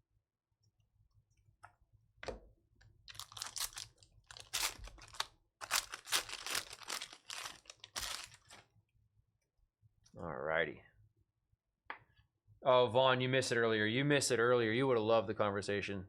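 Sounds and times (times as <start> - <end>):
plastic wrappers tearing and crinkling: 3.1 - 8.6.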